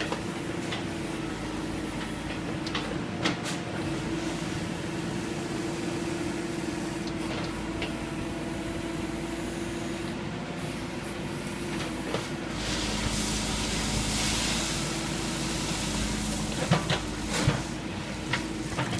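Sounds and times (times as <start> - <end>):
backhoe engine humming: 0.0 - 18.9
hiss: 12.5 - 18.7.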